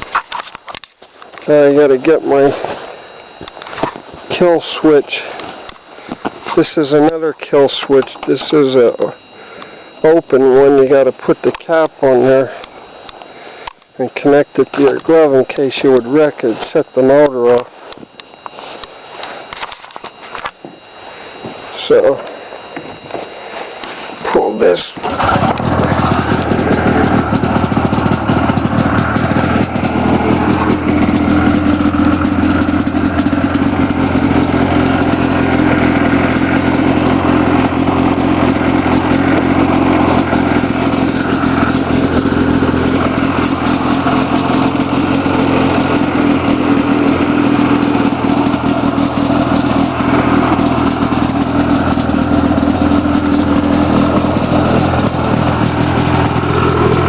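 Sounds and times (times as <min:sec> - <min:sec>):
snowmobile engine idling: 0:04.3 - 0:17.7, 0:23.4 - 0:57.0.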